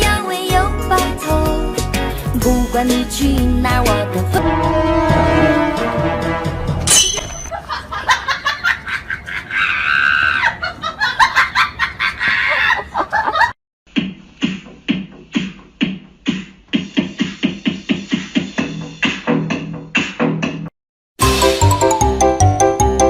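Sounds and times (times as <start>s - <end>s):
music with steady beat: 14.0s - 23.0s
clicky rhythmic music: 21.4s - 23.0s.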